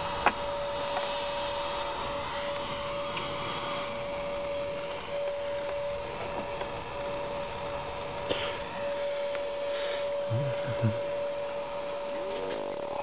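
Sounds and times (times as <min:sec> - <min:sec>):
water heater pitched hum: 0:00.0 - 0:13.0.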